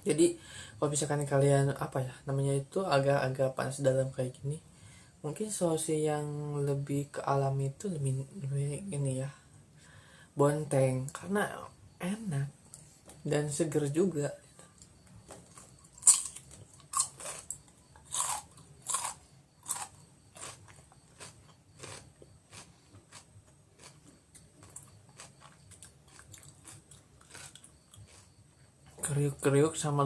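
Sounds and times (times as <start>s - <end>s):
cucumber crunching when chewed: 15.3s - 28.4s.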